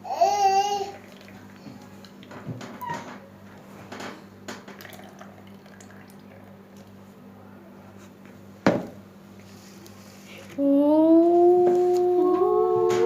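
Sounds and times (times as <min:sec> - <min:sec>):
person humming a tune: 0:10.6 - 0:13.0.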